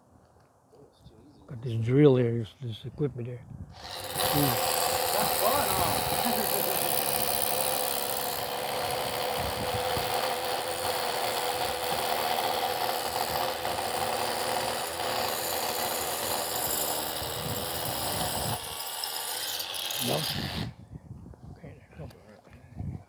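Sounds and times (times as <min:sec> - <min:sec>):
hammer drill boring into concrete: 0:03.8 - 0:20.7.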